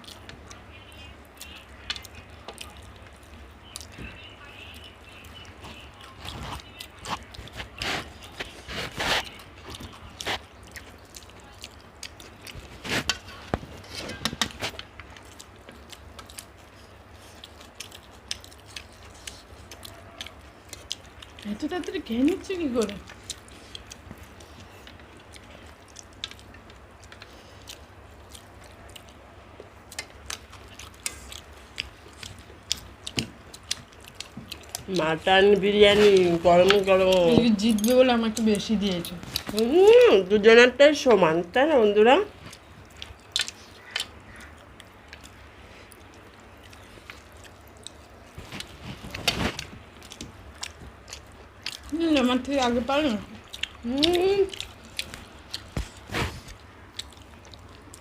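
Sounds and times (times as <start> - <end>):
low steady hum: 0.0 - 58.0
soft chewing and mouth clicks: 0.0 - 58.0.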